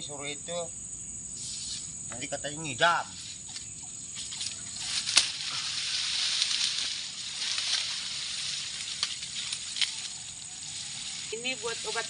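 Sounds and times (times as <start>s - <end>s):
crickets chirring: 0.0s - 12.0s
sharp crack: 4.4s - 8.0s
rushing rustling noise: 4.4s - 12.0s.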